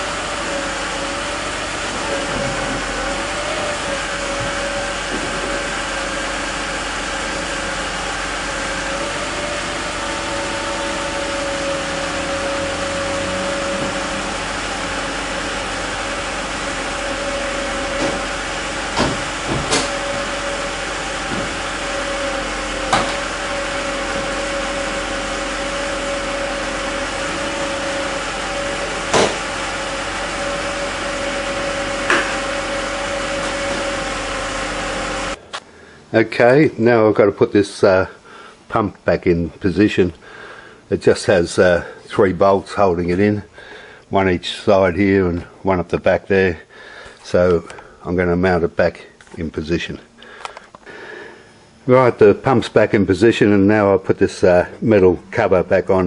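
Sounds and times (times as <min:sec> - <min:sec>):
hydraulic pump whine: 0:00.0 - 0:36.2, 0:50.0 - 0:56.0
engine hum: 0:00.0 - 0:36.9, 0:49.2 - 0:56.0.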